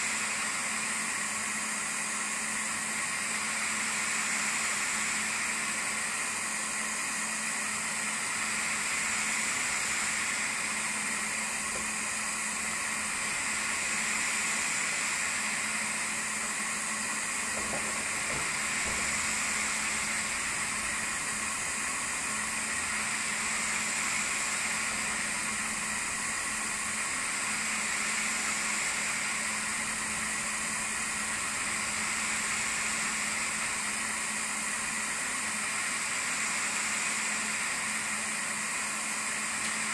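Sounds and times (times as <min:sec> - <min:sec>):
laser engraver fans hissing: 0:00.0 - 0:39.9.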